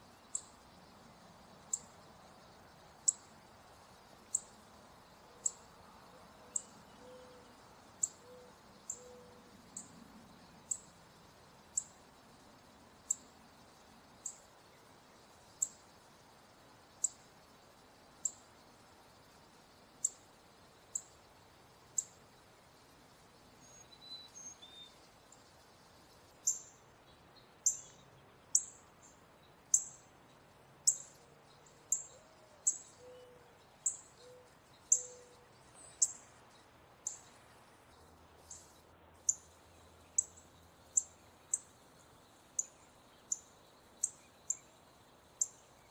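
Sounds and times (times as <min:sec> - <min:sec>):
bird chip calls: 0:31.9 - 0:35.4.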